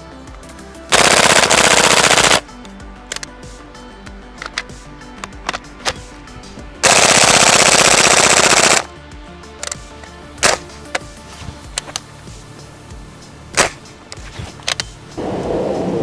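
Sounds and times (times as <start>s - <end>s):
airsoft rifle firing: 0.9s - 2.4s, 6.8s - 8.9s.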